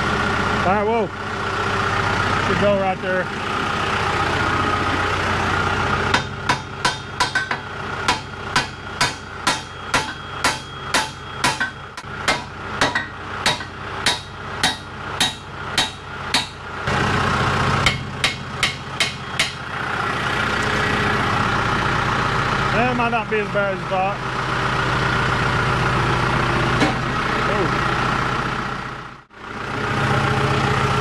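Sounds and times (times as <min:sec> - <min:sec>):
diesel engine idling: 0:00.0 - 0:31.0
hammer blows on steel: 0:06.1 - 0:16.6.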